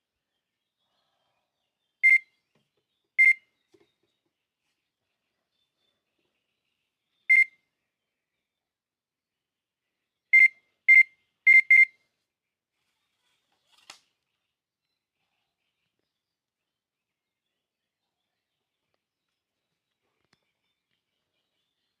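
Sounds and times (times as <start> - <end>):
electronic bite alarm beeping: 2.0 - 2.3, 3.2 - 3.4, 7.3 - 7.5, 10.4 - 11.9.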